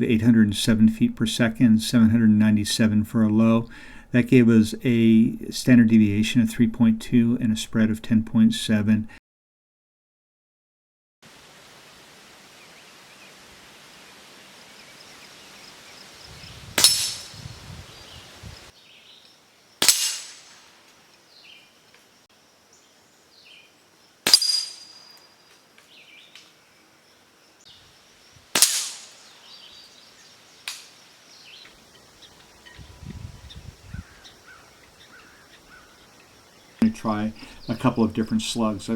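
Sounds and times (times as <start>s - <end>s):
air rifle shots: 16.8s - 17.5s, 19.8s - 20.9s, 24.2s - 25.2s, 28.5s - 29.6s.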